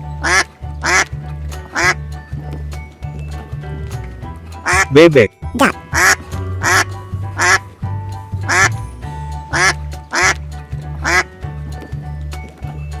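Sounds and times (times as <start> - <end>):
background music with bass line: 0.0 - 13.0
duck quacking: 0.2 - 1.1, 1.8 - 2.0, 5.6 - 6.8, 7.4 - 7.6, 8.5 - 8.7, 9.5 - 10.4, 11.0 - 11.3.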